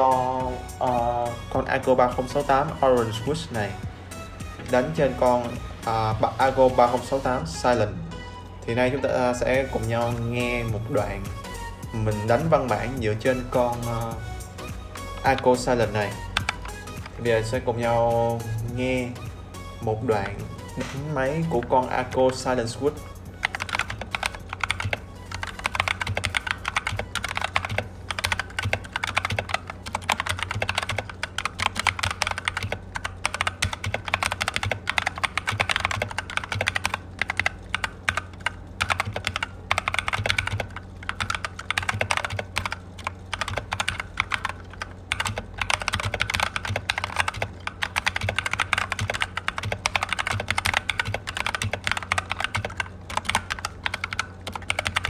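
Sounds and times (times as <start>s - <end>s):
keyboard typing clicks: 15.1s - 17.6s, 20.1s - 55.0s.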